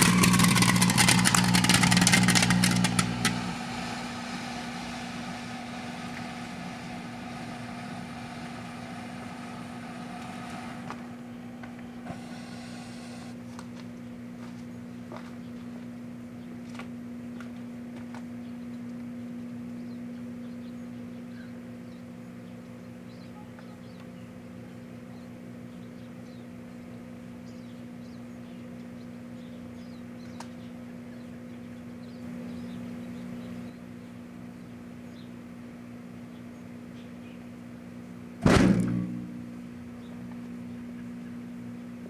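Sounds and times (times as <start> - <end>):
microwave oven humming: 0.0 - 17.8, 31.7 - 42.0.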